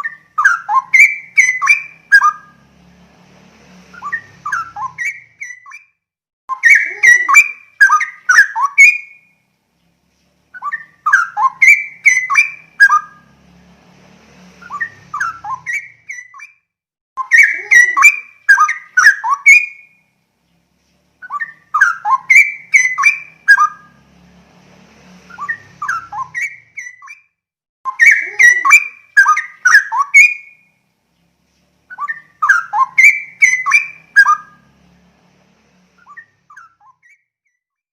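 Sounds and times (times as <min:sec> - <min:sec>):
bird singing whistled phrases: 0:00.0 - 0:02.5, 0:03.9 - 0:05.9, 0:06.5 - 0:09.4, 0:10.5 - 0:13.2, 0:14.6 - 0:16.6, 0:17.2 - 0:20.0, 0:21.2 - 0:24.0, 0:25.3 - 0:27.3, 0:27.9 - 0:30.7, 0:31.9 - 0:34.6, 0:36.0 - 0:37.6.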